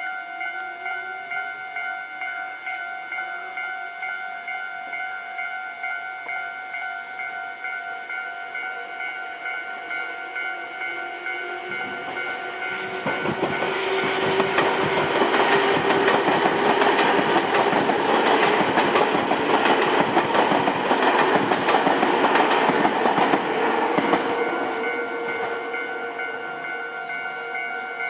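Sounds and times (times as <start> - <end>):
crossing warning bell ringing: 0.0 - 28.0
train wheels clattering over rail joints: 12.8 - 24.4.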